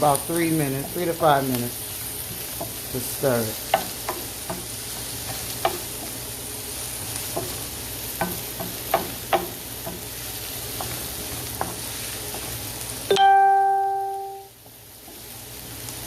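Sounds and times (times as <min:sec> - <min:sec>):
vegetables sizzling in oil: 0:00.0 - 0:16.0
phone notification chime: 0:13.1 - 0:14.5.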